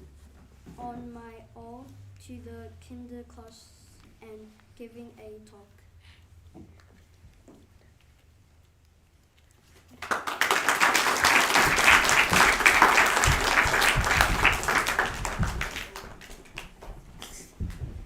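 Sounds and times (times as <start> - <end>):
audience applauding: 10.0 - 17.4.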